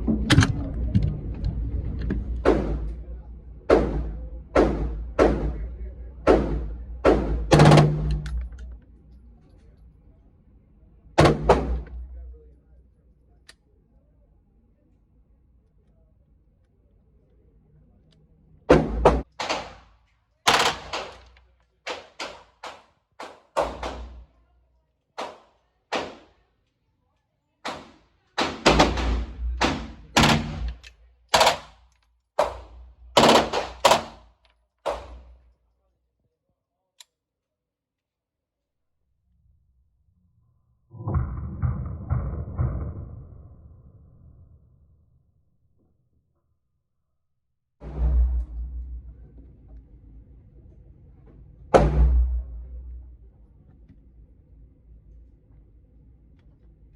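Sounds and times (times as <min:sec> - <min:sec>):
gunshots with echo: 0:03.7 - 0:08.5, 0:27.7 - 0:30.8, 0:32.4 - 0:34.2
single gunshots: 0:27.7 - 0:31.8, 0:32.4 - 0:34.2, 0:34.9 - 0:35.3
automatic gunfire burst: 0:28.4 - 0:31.7, 0:33.2 - 0:34.2.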